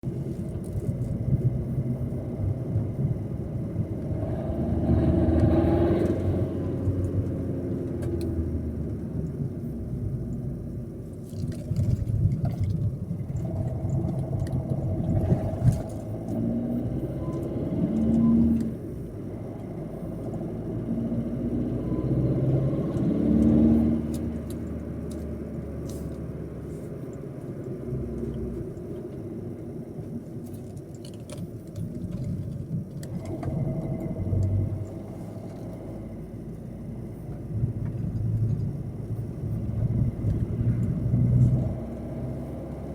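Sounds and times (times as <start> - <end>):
car engine revving: 1.0 - 9.3, 12.6 - 26.9, 33.0 - 42.9.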